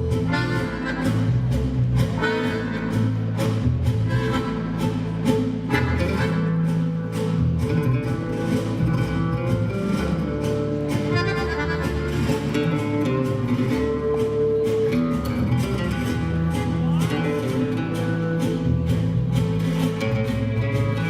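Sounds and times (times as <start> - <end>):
guitar-led dance music: 0.0 - 21.0.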